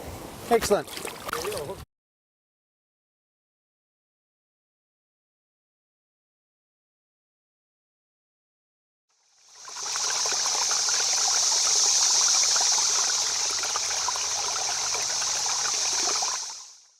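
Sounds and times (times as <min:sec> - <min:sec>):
river water over stones: 0:00.6 - 0:01.8, 0:09.4 - 0:16.9.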